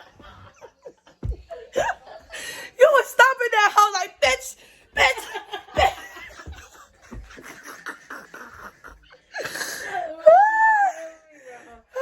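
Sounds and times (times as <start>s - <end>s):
woman laughing: 5.0s - 9.4s.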